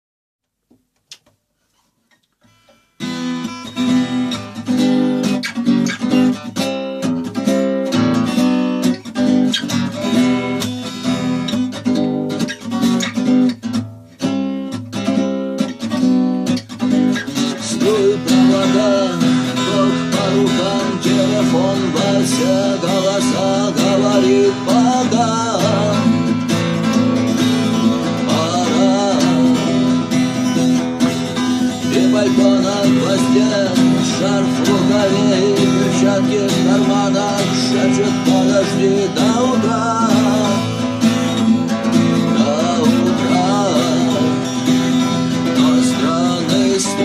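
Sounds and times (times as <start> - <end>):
acoustic guitar: 0.6 - 47.0.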